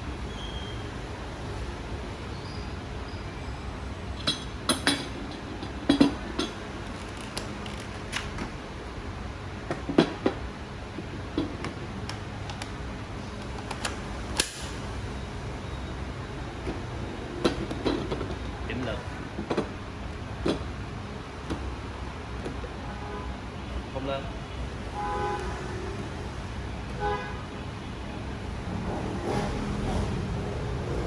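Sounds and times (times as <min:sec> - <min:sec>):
clicks and knocks of hard objects: 0:04.2 - 0:08.6.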